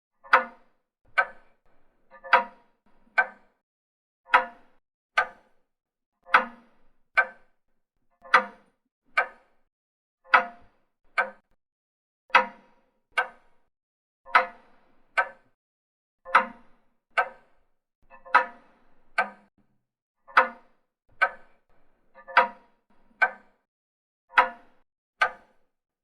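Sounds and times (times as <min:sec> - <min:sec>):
pendulum clock ticking: 0:03.2 - 0:03.4, 0:04.3 - 0:04.5, 0:08.2 - 0:08.6, 0:09.2 - 0:09.4, 0:10.3 - 0:10.6, 0:16.3 - 0:16.5.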